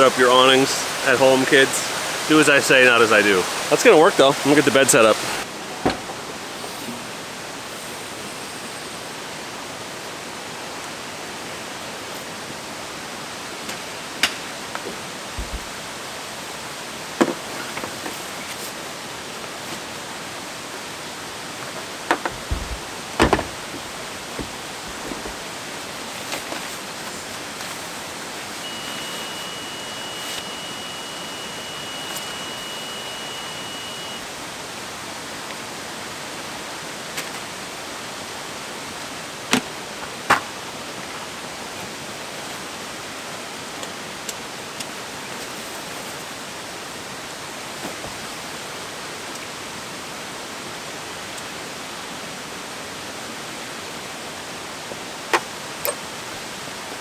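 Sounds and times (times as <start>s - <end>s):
thin high tone: 0.0s - 5.4s, 28.2s - 34.4s
waterfall rushing: 0.0s - 5.7s
sharp knocks: 22.1s - 23.8s.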